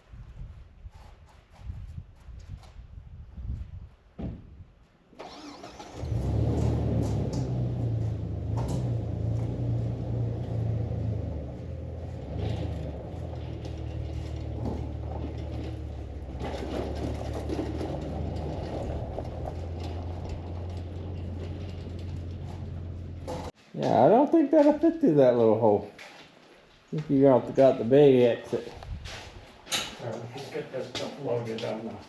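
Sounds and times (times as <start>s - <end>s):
vehicle engine cranking and idling: 5.2s - 23.6s.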